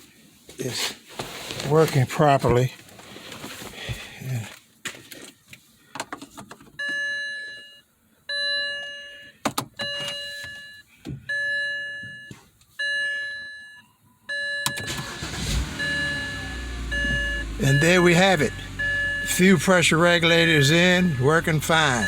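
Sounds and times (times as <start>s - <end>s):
car warning chime dinging: 8.3s - 22.0s
car engine cranking and starting: 14.7s - 22.0s.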